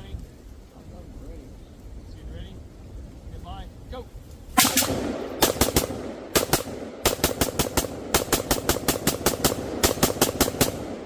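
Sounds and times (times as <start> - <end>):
rapid semi-automatic gunfire: 4.6 - 11.0.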